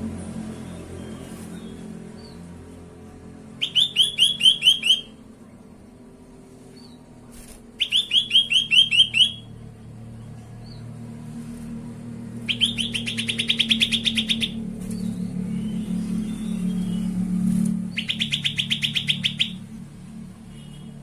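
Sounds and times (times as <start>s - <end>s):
low steady hum: 0.0s - 21.0s
bulbul calling: 3.6s - 5.2s, 7.8s - 9.5s, 12.4s - 15.1s, 17.9s - 19.6s.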